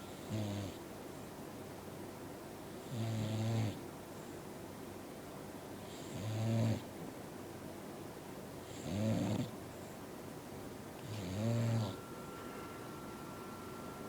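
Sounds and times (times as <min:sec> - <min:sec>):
dog snoring: 0:00.1 - 0:00.8, 0:02.8 - 0:03.8, 0:05.9 - 0:06.9, 0:08.6 - 0:09.5, 0:11.0 - 0:12.0.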